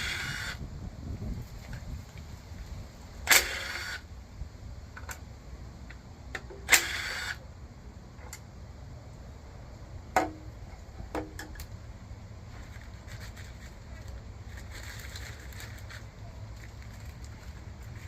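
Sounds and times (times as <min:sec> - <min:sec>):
impact wrench running: 0:00.0 - 0:00.6, 0:03.3 - 0:04.0, 0:06.6 - 0:07.4.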